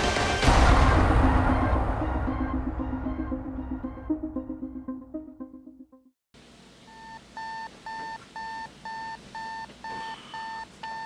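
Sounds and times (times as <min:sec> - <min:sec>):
music: 0:00.0 - 0:06.2
electronic alarm beeping: 0:06.9 - 0:11.0.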